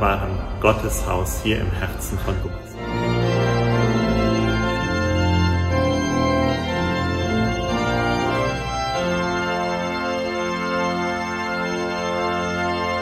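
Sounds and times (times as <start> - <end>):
deep pedal bass: 0.0 - 10.0
church pipe organ chords: 0.0 - 13.0.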